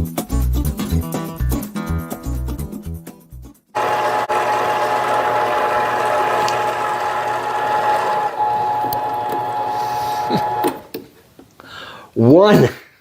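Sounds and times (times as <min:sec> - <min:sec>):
mini lathe high drive tone: 0:03.8 - 0:10.9
cut-off tool parting rod: 0:03.8 - 0:11.0.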